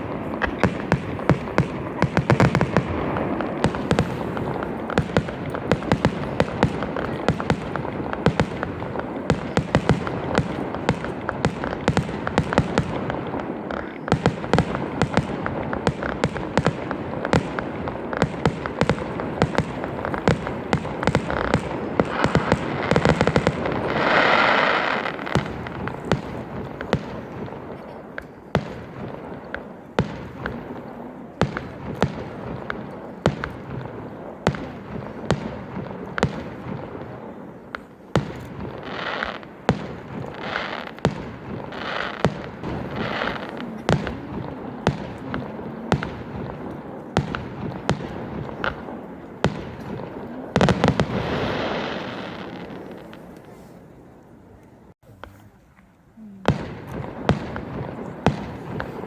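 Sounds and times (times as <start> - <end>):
fireworks bangs and crackles: 0.0 - 59.0.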